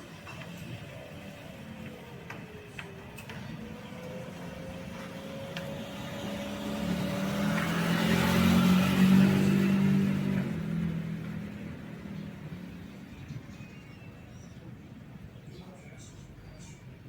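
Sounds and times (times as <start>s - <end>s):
vehicle engine passing by: 0.0s - 13.5s.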